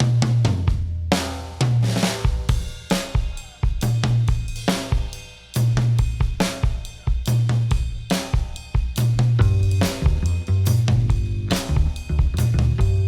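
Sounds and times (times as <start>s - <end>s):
drum kit and cymbal accents: 0.0s - 13.0s
blues band playing: 9.4s - 13.0s.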